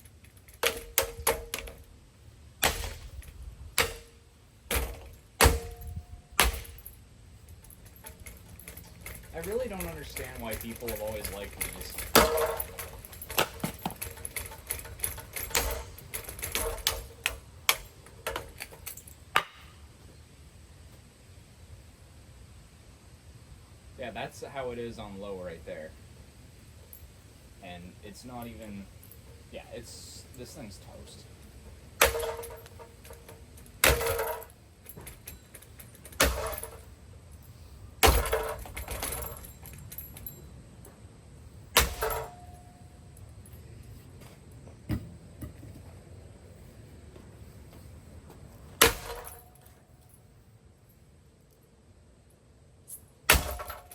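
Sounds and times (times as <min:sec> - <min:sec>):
ceiling fan parts clicking and knocking: 0:00.0 - 0:02.0, 0:02.6 - 0:19.6, 0:28.2 - 0:41.1
ceiling fan being smashed: 0:02.6 - 0:06.9, 0:11.8 - 0:18.4, 0:32.0 - 0:35.1, 0:36.1 - 0:36.8, 0:38.0 - 0:39.4, 0:41.7 - 0:42.5, 0:48.8 - 0:49.6, 0:53.3 - 0:53.9
ringing metallic clatter: 0:02.6 - 0:19.2, 0:28.4 - 0:40.6, 0:41.7 - 0:43.7, 0:48.8 - 0:50.3, 0:52.9 - 0:53.9.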